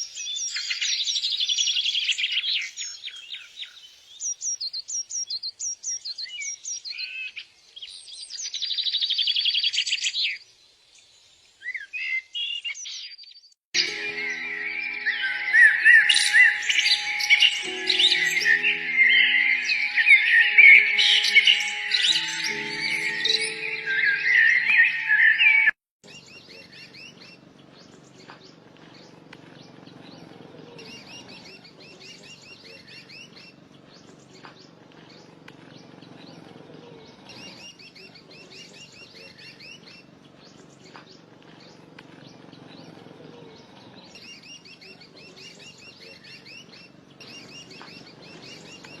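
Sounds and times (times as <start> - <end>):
music: 13.8 - 25.8
birds chirping: 13.8 - 36.5, 37.3 - 49.0.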